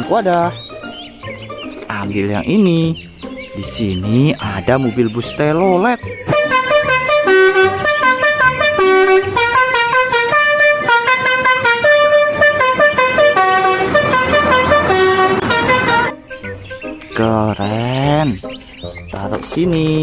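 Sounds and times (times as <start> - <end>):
multi-tone musical bus horn: 6.3 - 16.2.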